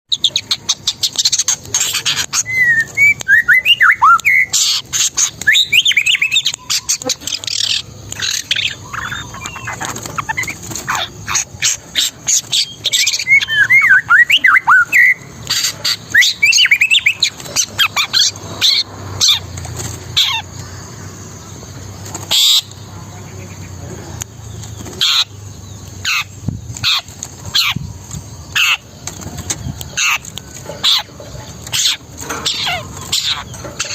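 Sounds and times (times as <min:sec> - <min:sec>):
shrike singing with chattering notes: 0:00.1 - 0:33.9.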